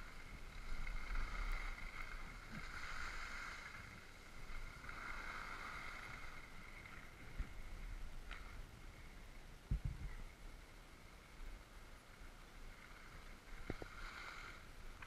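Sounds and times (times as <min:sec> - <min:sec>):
skis sliding over snow: 0:00.0 - 0:08.6
wind rumble on microphone: 0:00.0 - 0:15.0.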